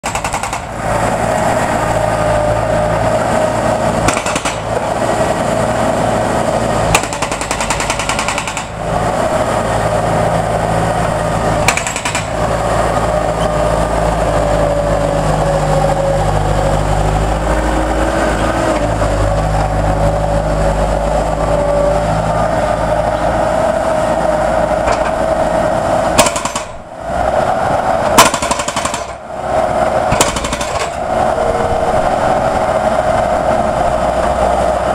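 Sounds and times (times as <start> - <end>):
low engine drone: 0.0 - 34.9
concrete breaker hammering: 4.0 - 4.8, 6.9 - 8.8, 11.6 - 12.4, 26.2 - 26.8, 28.1 - 29.2, 30.1 - 31.0.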